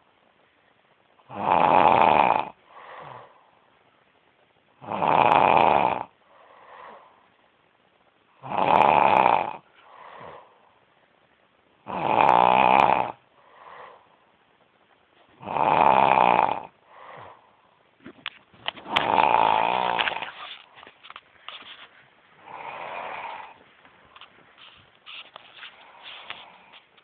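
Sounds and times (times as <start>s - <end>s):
person snoring loudly: 1.3s - 3.4s, 4.8s - 6.1s, 8.4s - 10.5s, 11.8s - 14.0s, 15.4s - 17.3s, 18.9s - 20.4s, 22.4s - 23.6s
faint breath sound: 2.6s - 3.8s, 6.2s - 7.5s, 9.6s - 11.2s, 13.2s - 14.4s, 16.8s - 27.0s.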